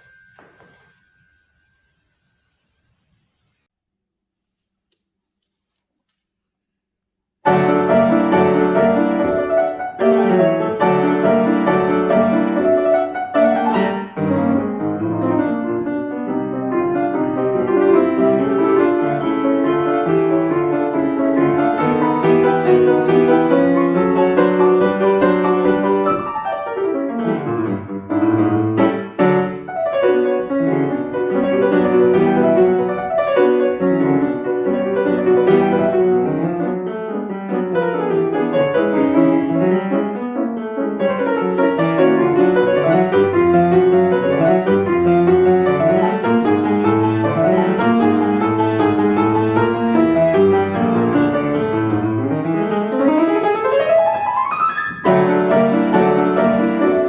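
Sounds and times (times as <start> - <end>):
classical piano piece: 0.0 - 2.6, 7.4 - 57.0.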